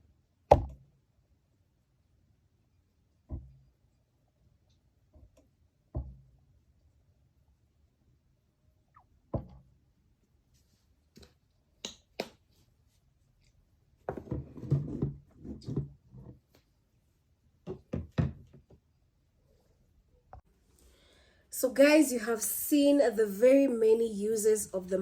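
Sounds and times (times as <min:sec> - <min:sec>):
objects being handled knocking: 0:14.1 - 0:16.4, 0:17.6 - 0:18.9.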